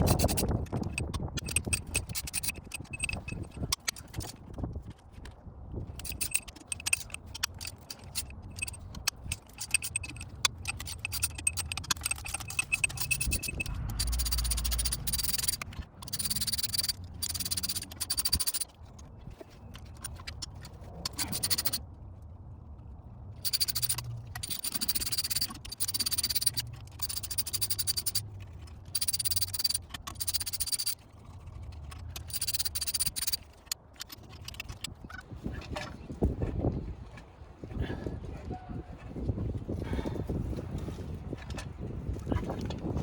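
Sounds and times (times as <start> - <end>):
ratchet wrench clicking: 0.0 - 4.4, 6.0 - 18.7, 19.8 - 21.8, 23.4 - 31.0, 31.8 - 34.9.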